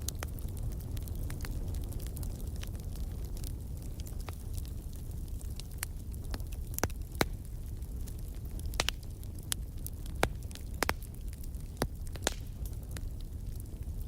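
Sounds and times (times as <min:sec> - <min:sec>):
fire crackling and popping: 0:00.0 - 0:14.0
low rumble of flame: 0:00.0 - 0:14.0.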